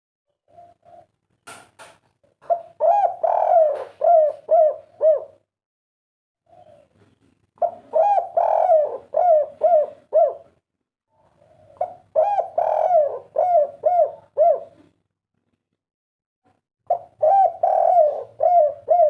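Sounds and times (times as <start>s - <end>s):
dove cooing: 0.4s - 1.2s, 2.4s - 5.5s, 6.4s - 10.6s, 11.2s - 15.0s, 16.9s - 19.0s.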